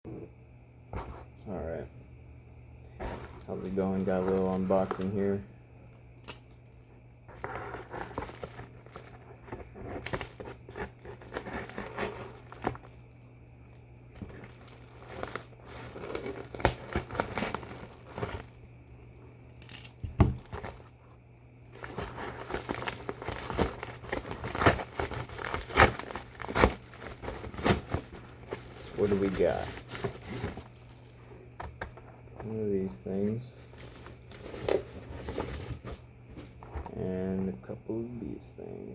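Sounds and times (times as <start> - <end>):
packaging crinkling and tearing: 2.9 - 5.3, 7.3 - 18.7, 20.1 - 32.6, 33.6 - 36.8.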